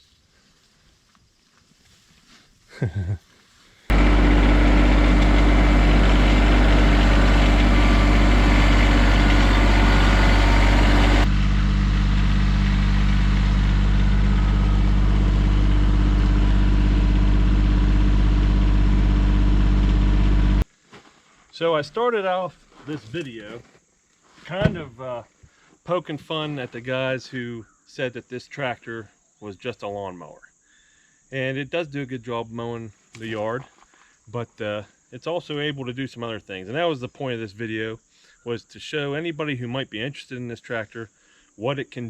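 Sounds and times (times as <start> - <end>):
tractor diesel engine running: 3.9 - 20.6.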